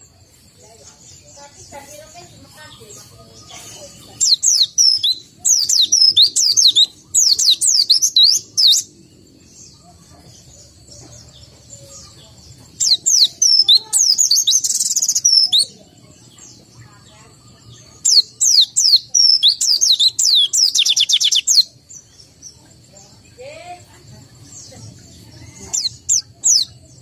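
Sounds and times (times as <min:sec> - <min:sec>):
bird singing high chirps: 0:00.0 - 0:27.0.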